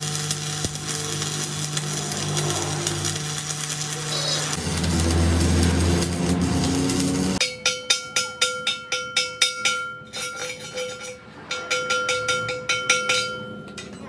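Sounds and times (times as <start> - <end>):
power tool running: 0.0 - 7.4
hammer striking metal: 6.0 - 14.0.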